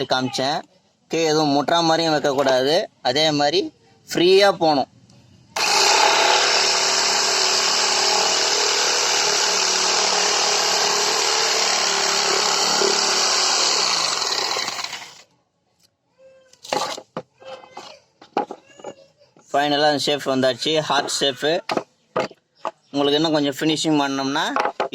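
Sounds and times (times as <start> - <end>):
jigsaw cutting: 5.6 - 15.2.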